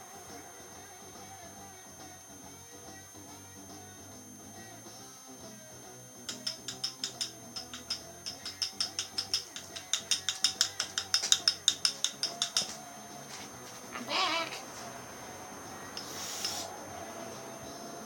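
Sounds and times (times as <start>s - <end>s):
ratchet wrench clicking: 6.3s - 12.8s, 15.9s - 16.7s.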